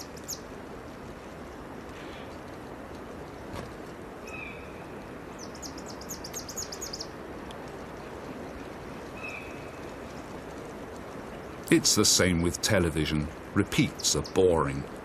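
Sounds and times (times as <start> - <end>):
bird chirping: 5.4 - 7.1.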